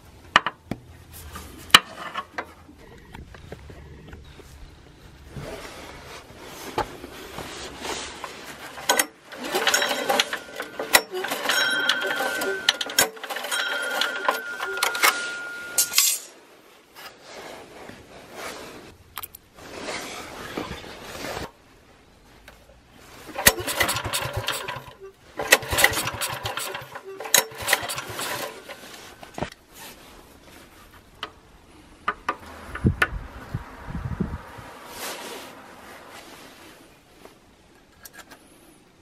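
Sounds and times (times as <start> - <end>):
recoil rope pulls: 7.5 - 15.8, 23.2 - 29.2
generator engine cranking: 8.6 - 16.0, 23.3 - 29.1.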